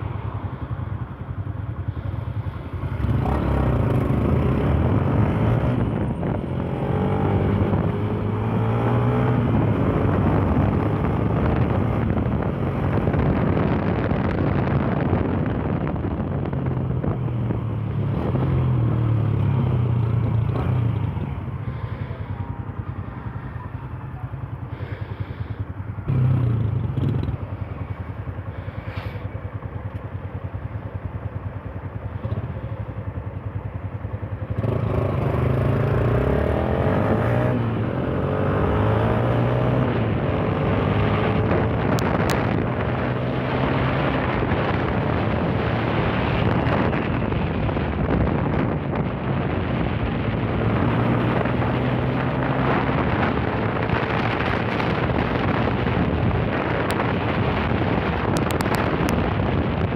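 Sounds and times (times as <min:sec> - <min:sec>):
motorcycle engine revving: 0:02.3 - 0:16.0, 0:24.6 - 0:29.3, 0:34.3 - 0:59.9
wind on microphone: 0:02.9 - 0:21.8, 0:34.6 - 0:59.9.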